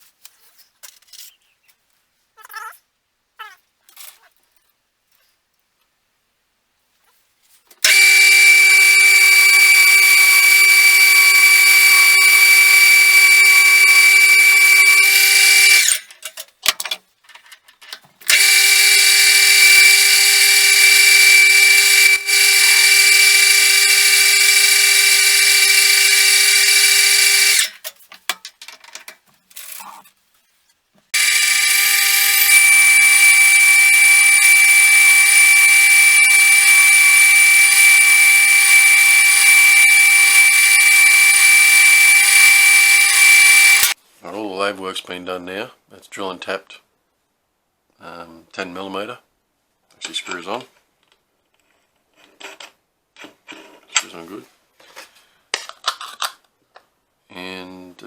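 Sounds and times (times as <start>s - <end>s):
metal lathe cutting whine: 7.8s - 16.0s, 18.3s - 27.7s, 31.2s - 44.0s.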